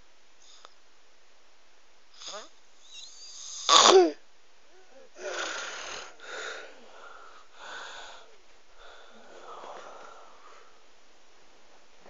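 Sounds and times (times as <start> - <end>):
wheezy snoring with whistle: 2.2 - 3.9, 5.2 - 6.2.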